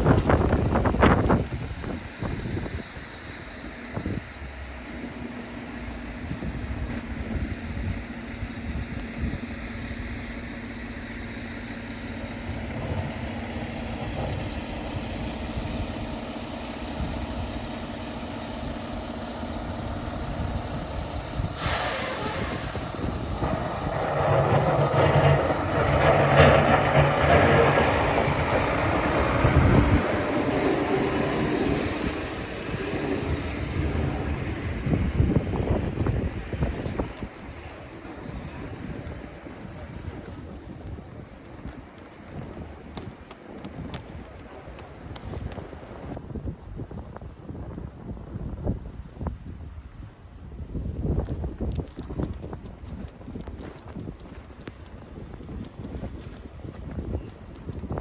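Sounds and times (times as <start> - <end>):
heavy vehicle engine: 0.0 - 46.2
short sharp hiss: 21.6 - 22.9.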